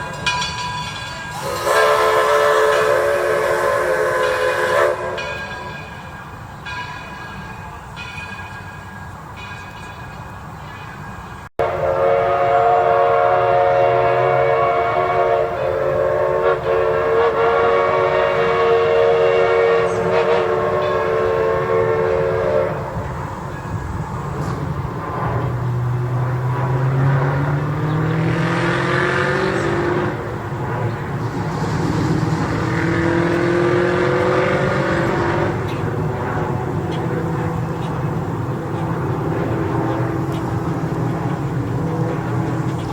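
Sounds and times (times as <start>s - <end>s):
locomotive running rumble: 0.0s - 42.9s
steam whistle chord: 1.3s - 6.0s, 11.6s - 23.2s.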